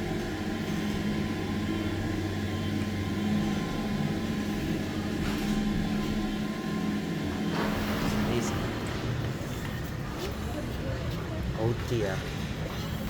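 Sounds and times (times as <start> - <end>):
lift motor humming: 0.0 - 10.2.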